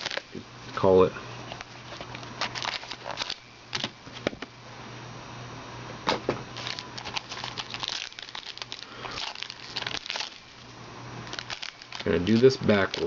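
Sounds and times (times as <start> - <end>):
plastic wrapping crinkling: 0.0 - 0.4, 1.5 - 4.2, 6.6 - 13.0
faint steady hum: 0.0 - 13.0.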